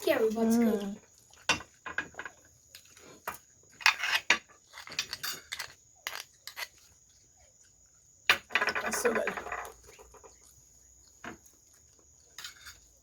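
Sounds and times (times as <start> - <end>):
chewing: 0.1 - 1.8, 2.4 - 3.8, 4.6 - 8.2, 9.7 - 13.0.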